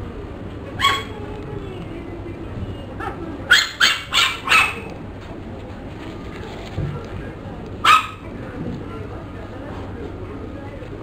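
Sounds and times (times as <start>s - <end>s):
puppy yapping: 0.8s - 1.3s, 3.0s - 4.9s, 7.8s - 8.2s.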